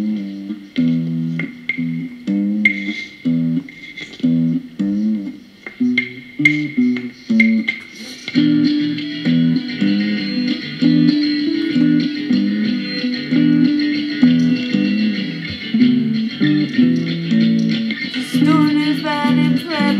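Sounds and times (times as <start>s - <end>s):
guitar riff: 0.0s - 19.9s
sustained higher notes: 18.2s - 19.9s.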